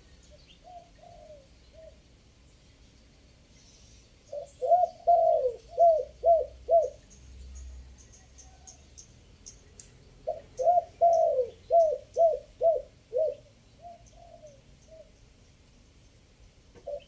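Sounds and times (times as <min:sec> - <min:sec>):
small bird chirping: 0:00.0 - 0:17.0
dove cooing: 0:00.4 - 0:02.1, 0:04.3 - 0:07.0, 0:10.2 - 0:15.1, 0:16.8 - 0:17.0.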